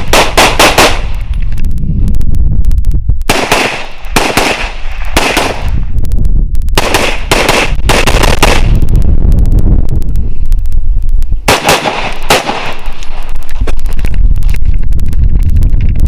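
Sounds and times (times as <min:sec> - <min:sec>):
semi-automatic gunfire: 0:00.0 - 0:01.1, 0:03.3 - 0:05.8, 0:06.8 - 0:08.7, 0:11.5 - 0:12.9.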